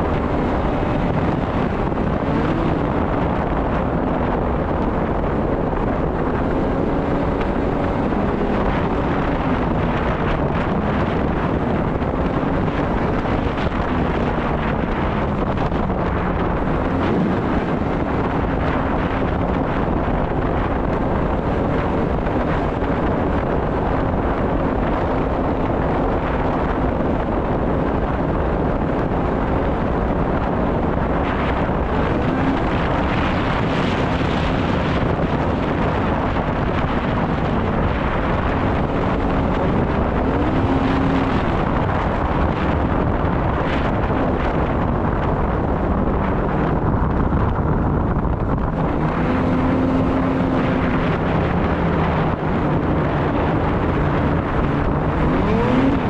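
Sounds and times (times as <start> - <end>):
snowmobile engine running: 0.0 - 56.0
wind noise on microphone: 0.0 - 56.0.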